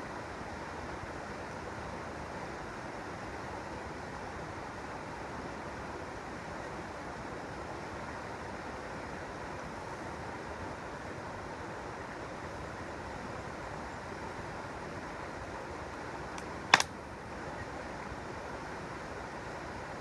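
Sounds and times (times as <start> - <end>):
campfire pop: 16.4 - 17.0.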